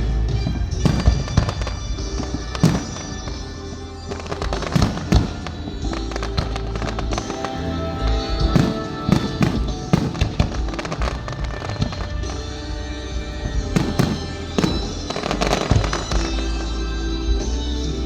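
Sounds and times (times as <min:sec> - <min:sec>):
background music: 0:00.0 - 0:18.0
fireworks bangs and pops: 0:04.1 - 0:12.6, 0:13.4 - 0:16.5.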